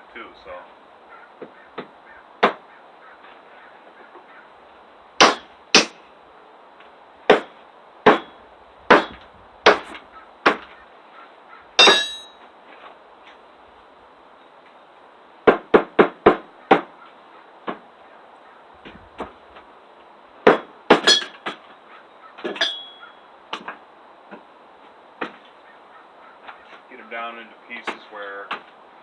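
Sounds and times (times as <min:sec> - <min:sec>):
hatchet chopping wood: 0:01.8 - 0:02.6, 0:05.2 - 0:06.0, 0:07.3 - 0:10.7, 0:15.4 - 0:16.9, 0:20.4 - 0:21.6.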